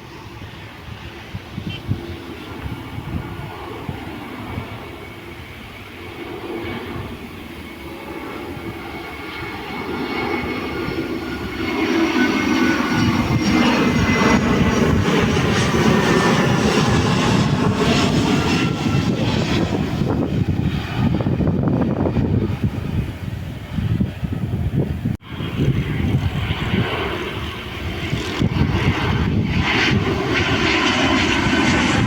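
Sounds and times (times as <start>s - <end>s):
jet engine roar: 0.0s - 32.0s.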